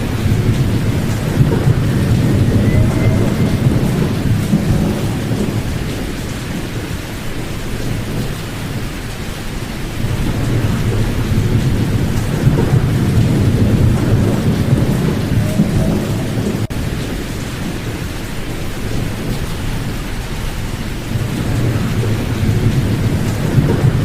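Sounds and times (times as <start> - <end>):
deep rumbling noise: 0.0 - 9.0, 9.8 - 17.9.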